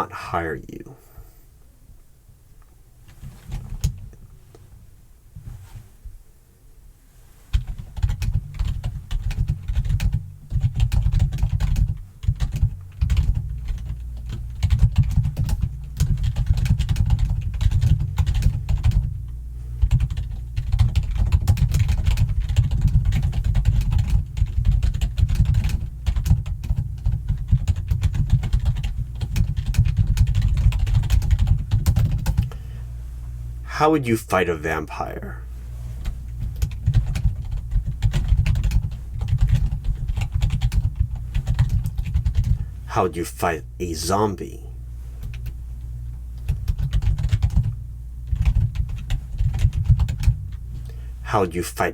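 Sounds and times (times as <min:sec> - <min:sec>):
fast typing on keyboard: 0:07.6 - 0:19.1, 0:19.8 - 0:32.5, 0:36.5 - 0:42.6, 0:46.5 - 0:47.7, 0:48.3 - 0:50.4.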